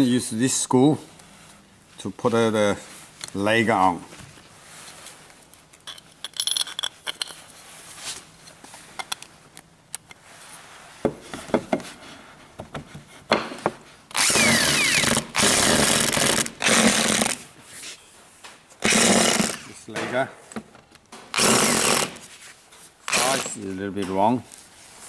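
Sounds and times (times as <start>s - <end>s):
power drill driving a screw: 14.1s - 17.4s, 18.8s - 19.7s, 21.3s - 22.2s, 23.1s - 23.6s.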